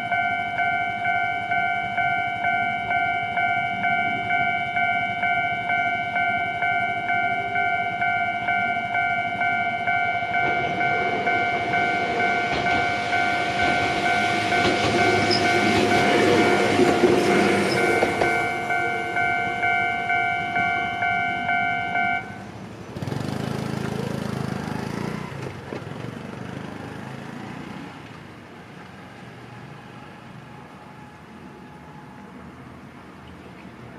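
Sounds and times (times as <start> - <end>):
level crossing bell ringing: 0.0 - 22.5
electric train rumbling past: 0.0 - 33.9.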